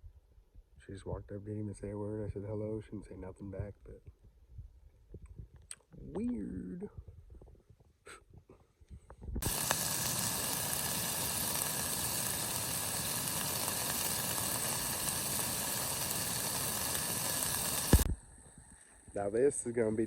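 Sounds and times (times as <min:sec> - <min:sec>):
steak sizzling in a pan: 0:09.4 - 0:18.1.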